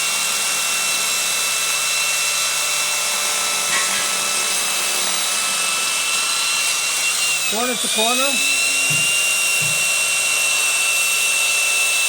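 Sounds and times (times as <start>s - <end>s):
angle grinder cutting tile: 0.0s - 12.0s.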